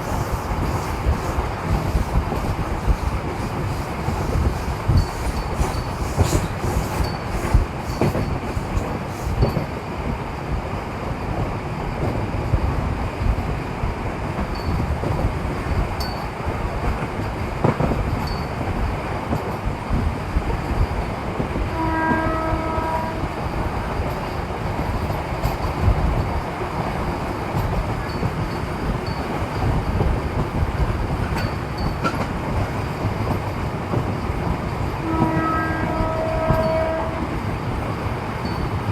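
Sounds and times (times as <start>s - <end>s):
train rumble and clatter: 0.0s - 38.9s
train horn: 21.7s - 23.4s, 35.0s - 37.5s.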